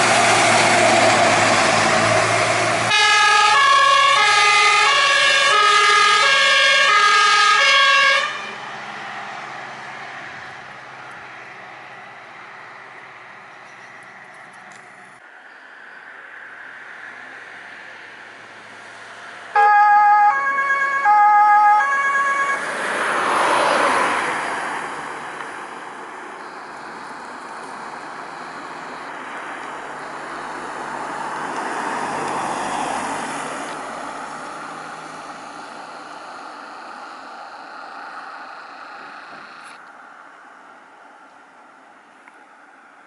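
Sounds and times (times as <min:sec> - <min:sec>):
faint road noise: 0:00.0 - 0:43.0
van engine and tyres passing: 0:00.0 - 0:43.0
two-tone siren: 0:02.9 - 0:08.6, 0:19.6 - 0:22.7.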